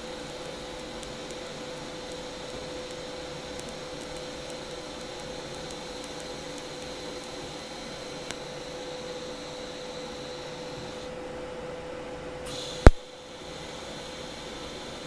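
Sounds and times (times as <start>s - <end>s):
welding arc hissing: 0.0s - 11.1s, 12.5s - 15.0s
crackling ticks: 0.4s - 7.5s.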